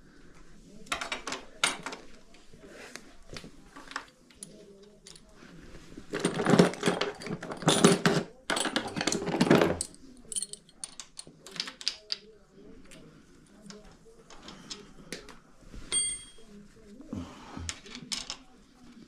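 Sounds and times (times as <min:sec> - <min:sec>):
metal tools clinking: 0:06.1 - 0:12.1, 0:15.9 - 0:16.5.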